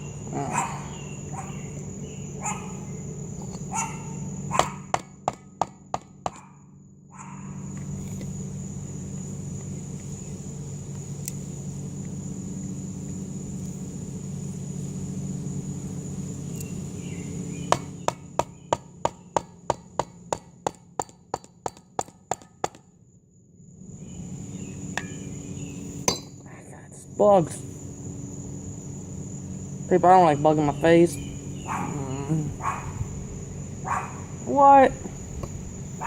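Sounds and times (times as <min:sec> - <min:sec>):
low hum: 0:00.0 - 0:20.3, 0:23.6 - 0:36.0
high insect trill: 0:00.0 - 0:36.0
hammer striking battery casing: 0:26.1 - 0:26.4.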